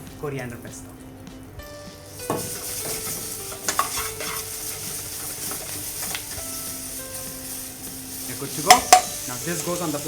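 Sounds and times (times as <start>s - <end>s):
tomatoes sizzling in oil: 0.0s - 10.0s
utensil clicking against pan: 2.4s - 6.4s, 8.4s - 10.0s.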